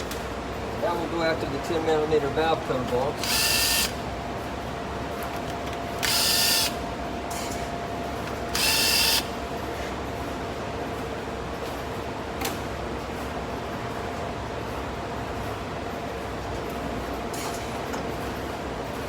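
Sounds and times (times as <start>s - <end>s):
steady background hum: 0.0s - 19.0s
power tool whirring: 3.2s - 4.0s, 6.0s - 6.8s, 8.5s - 9.3s.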